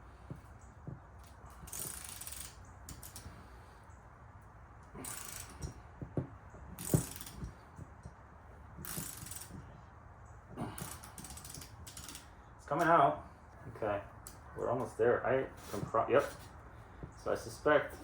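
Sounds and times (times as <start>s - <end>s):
socket ratchet clicking: 6.8s - 7.4s.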